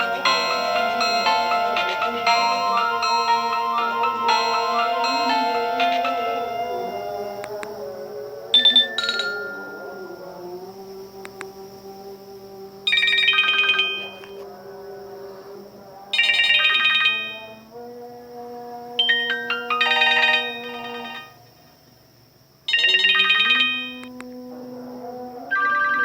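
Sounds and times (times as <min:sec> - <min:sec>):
polyphonic ringtone chord: 0:00.0 - 0:10.4, 0:12.9 - 0:14.3.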